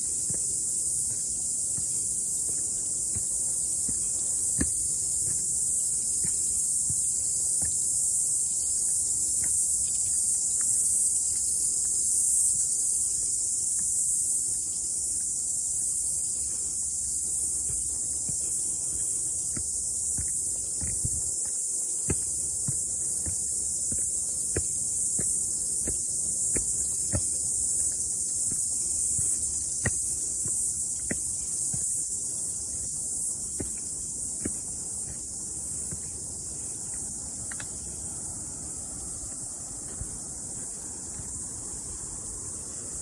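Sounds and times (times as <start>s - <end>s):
cicadas singing: 0.0s - 43.0s
faint ticks: 35.9s - 37.9s.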